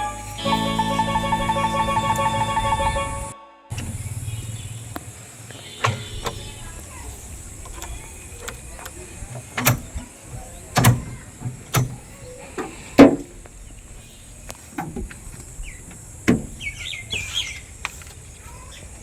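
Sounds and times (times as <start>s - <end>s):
loud knocks: 12.6s - 13.3s, 16.0s - 16.7s.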